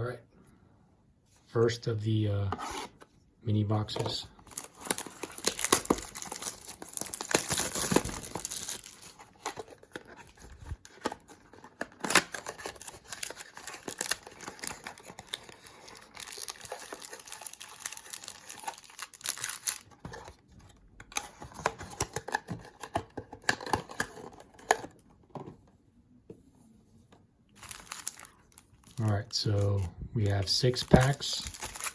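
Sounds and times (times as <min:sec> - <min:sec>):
packaging tearing and crinkling: 0:04.4 - 0:20.3, 0:27.6 - 0:29.8, 0:30.8 - 0:31.9.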